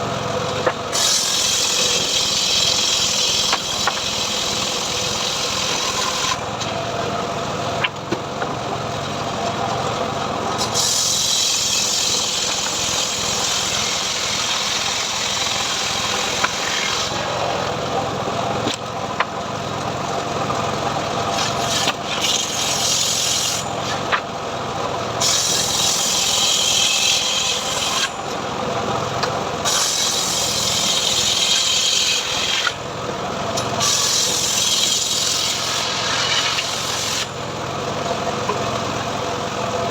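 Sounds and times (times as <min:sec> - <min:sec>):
saw blade rasping into wood: 0:00.9 - 0:06.4, 0:10.6 - 0:17.3, 0:21.3 - 0:24.2, 0:25.2 - 0:28.2, 0:29.6 - 0:32.8, 0:33.6 - 0:37.4.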